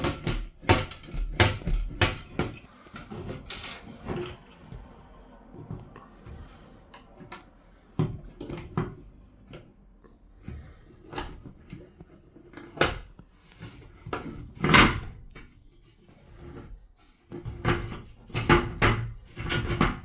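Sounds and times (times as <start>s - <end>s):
plastic parts clicking and knocking: 0.0s - 4.8s, 17.3s - 20.0s.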